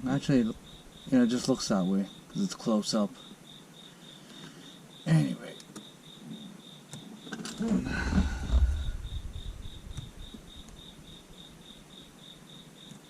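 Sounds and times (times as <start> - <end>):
cricket chirping: 0.0 - 13.0
low thumps and rustling: 7.3 - 11.2.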